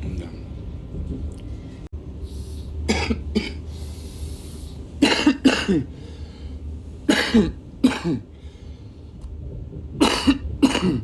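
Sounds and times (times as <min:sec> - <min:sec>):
electric train rumble: 0:00.0 - 0:11.0
man coughing: 0:02.9 - 0:03.7, 0:05.0 - 0:06.0, 0:07.1 - 0:08.3, 0:10.0 - 0:11.0.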